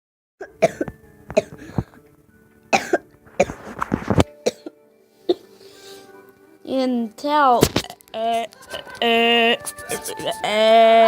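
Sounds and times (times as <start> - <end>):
person coughing hard: 2.8 - 3.6.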